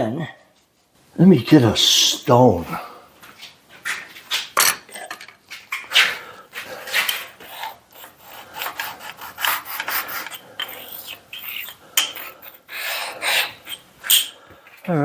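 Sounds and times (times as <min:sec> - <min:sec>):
stone scraping metal edge: 0:06.9 - 0:14.9.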